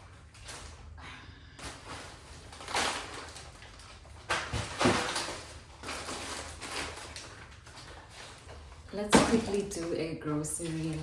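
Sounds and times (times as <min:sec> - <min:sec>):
shopping bags rustling: 0:00.0 - 0:11.0
dull knocks of bags set down: 0:04.3 - 0:05.4.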